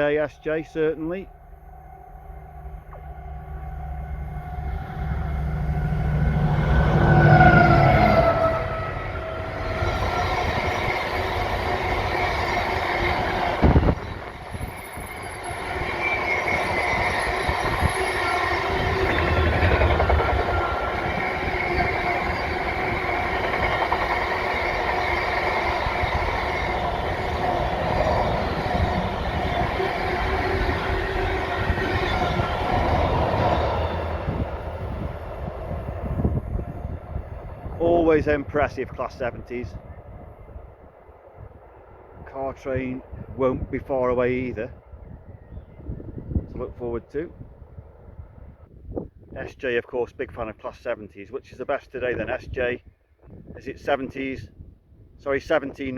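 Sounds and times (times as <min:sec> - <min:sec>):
freight train wagons rolling: 0:00.0 - 0:39.0.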